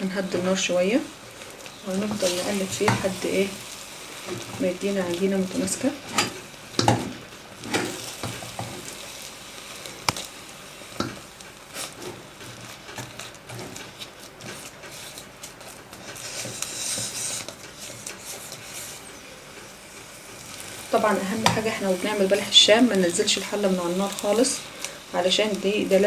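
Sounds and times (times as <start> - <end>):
spoon scraping dough in pot: 11.0 - 19.2
hiss: 16.1 - 26.0.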